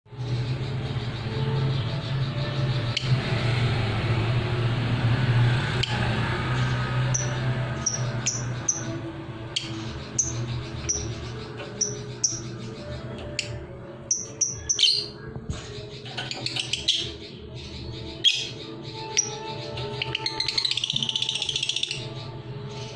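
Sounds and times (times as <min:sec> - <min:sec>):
bird chirping and chattering: 0:00.1 - 0:03.2, 0:07.0 - 0:22.9.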